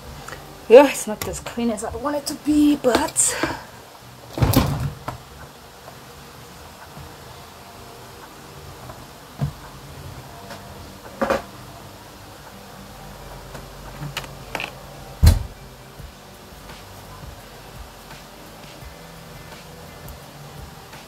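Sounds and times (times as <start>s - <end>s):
deep thump: 15.2s - 15.6s.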